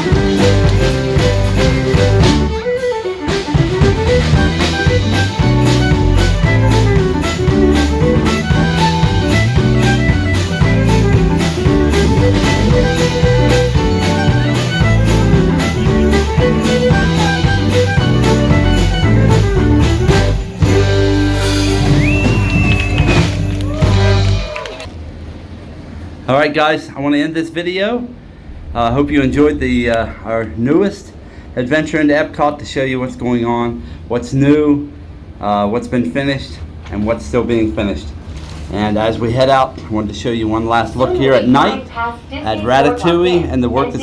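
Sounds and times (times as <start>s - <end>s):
instrumental music with steady beat: 0.0s - 24.4s.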